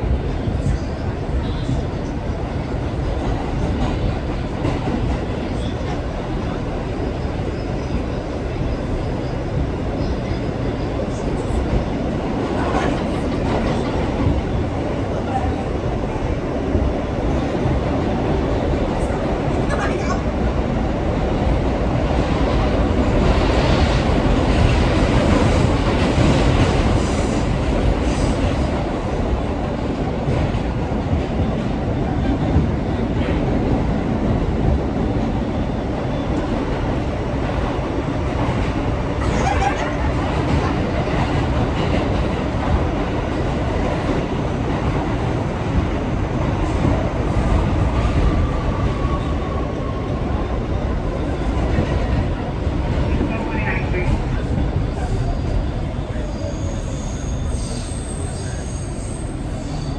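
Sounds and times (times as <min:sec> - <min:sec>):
subway car rumbling and rattling: 0:00.0 - 0:59.9
wheel squeal: 0:56.2 - 0:59.9.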